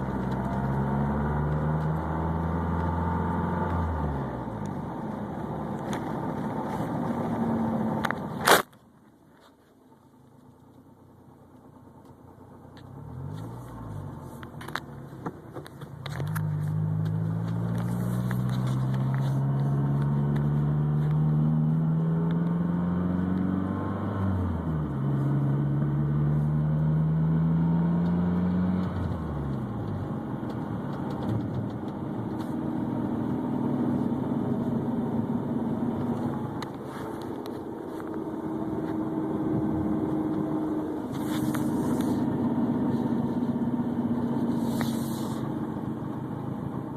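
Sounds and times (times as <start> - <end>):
car engine accelerating: 0.0 - 8.7, 10.1 - 46.9.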